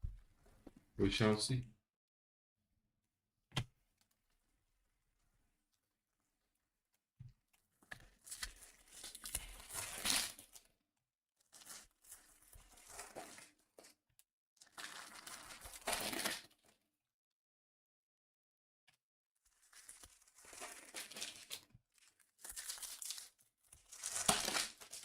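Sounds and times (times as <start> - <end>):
card pack wrappers tearing and crinkling: 8.2 - 10.6, 14.7 - 16.6, 19.5 - 25.0.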